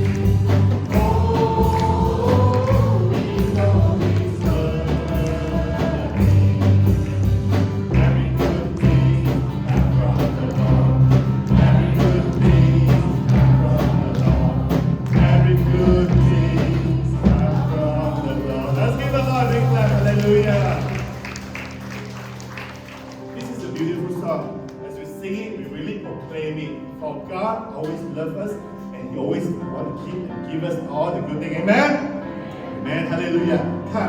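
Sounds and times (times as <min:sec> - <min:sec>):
group voices singing: 0:00.0 - 0:19.7
drum hits: 0:00.0 - 0:21.2
worship band music: 0:00.0 - 0:34.0.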